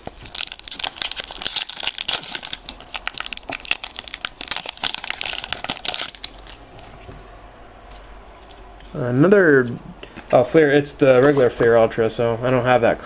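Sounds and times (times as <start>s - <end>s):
foil wrapper crinkling and tearing: 0.0s - 6.6s.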